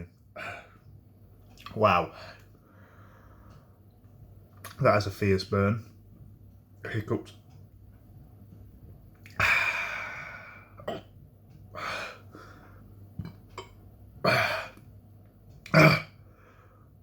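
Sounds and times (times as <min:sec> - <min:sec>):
man hiccuping: 0:13.6 - 0:14.8, 0:15.6 - 0:16.2.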